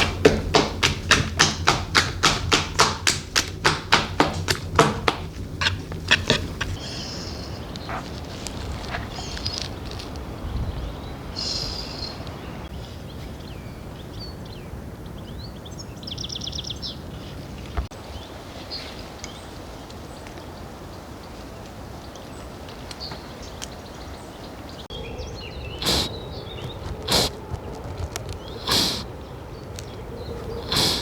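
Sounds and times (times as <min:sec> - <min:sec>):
loud knock: 0:00.0 - 0:06.5
background noise: 0:00.0 - 0:31.0.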